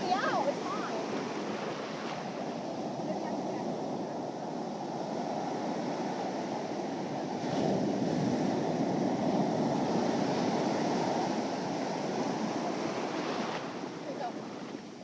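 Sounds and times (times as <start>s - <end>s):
wind buffeting microphone: 0.0s - 14.6s
ocean surf washing in: 0.0s - 15.0s.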